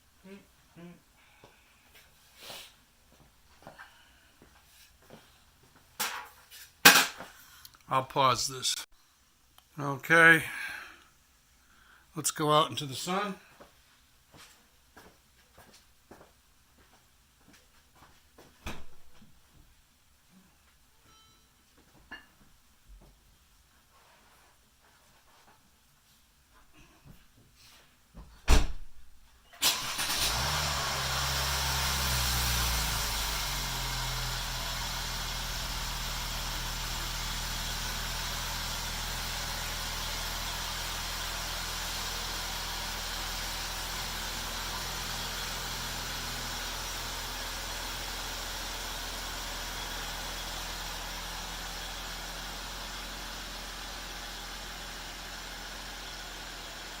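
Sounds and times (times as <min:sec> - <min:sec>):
car engine starting and idling: 0:29.6 - 0:57.0.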